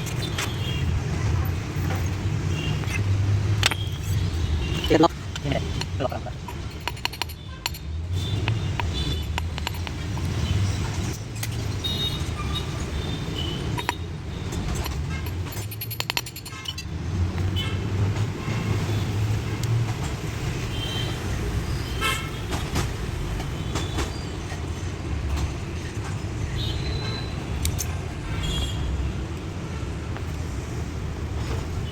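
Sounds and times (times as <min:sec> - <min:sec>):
road traffic rumble: 0:00.0 - 0:31.9
sharp clicks: 0:03.6 - 0:10.4, 0:13.7 - 0:16.8.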